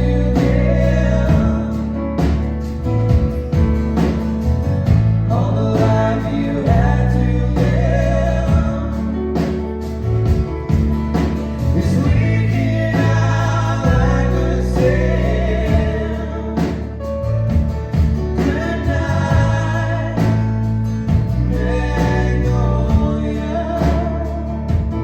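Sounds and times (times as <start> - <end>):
live band music: 0.0 - 25.0
low bass notes: 0.0 - 25.0
person singing: 11.8 - 16.9, 18.4 - 25.0.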